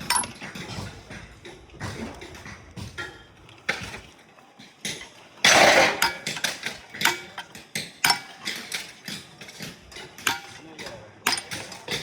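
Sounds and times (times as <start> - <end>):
hammer clanking on metal: 0.0 - 1.2, 5.5 - 12.0
metal clatter: 0.0 - 4.1.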